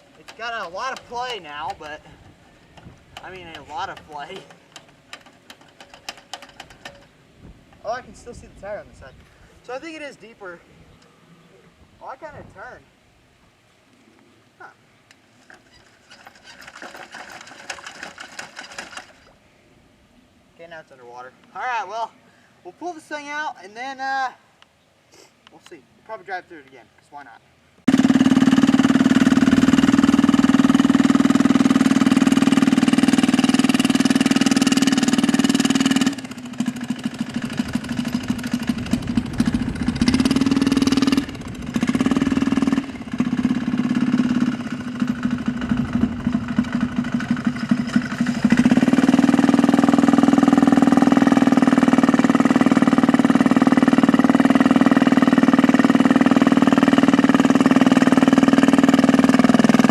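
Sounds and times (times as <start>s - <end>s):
diesel engine running: 27.9s - 59.9s.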